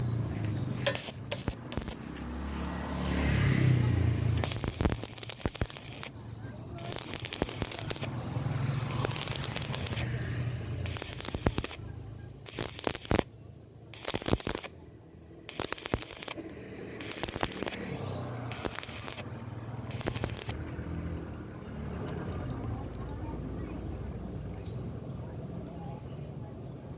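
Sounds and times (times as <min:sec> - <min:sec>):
welding arc crackling and popping: 0:00.8 - 0:13.3, 0:13.9 - 0:14.8, 0:15.5 - 0:20.8.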